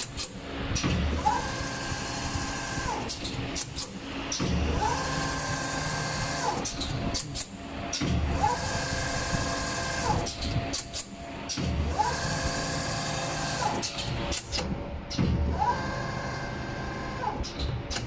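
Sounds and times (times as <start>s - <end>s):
winding machine motor whine: 4.6s - 6.8s, 8.3s - 10.8s, 11.8s - 14.2s.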